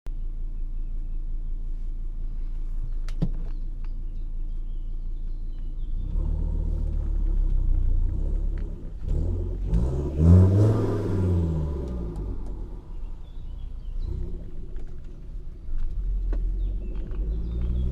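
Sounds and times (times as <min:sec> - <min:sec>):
car exhaust engine revving: 0:05.8 - 0:17.9.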